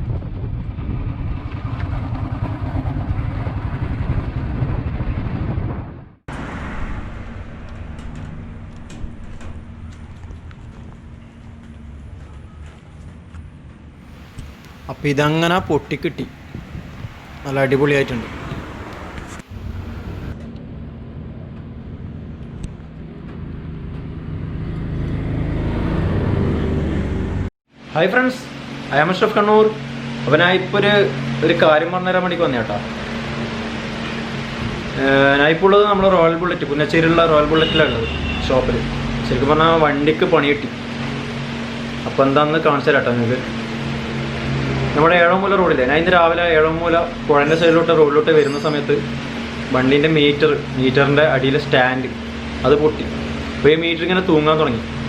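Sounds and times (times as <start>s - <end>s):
vehicle engine rumbling: 6.3s - 20.4s
vehicle engine humming: 14.1s - 20.4s.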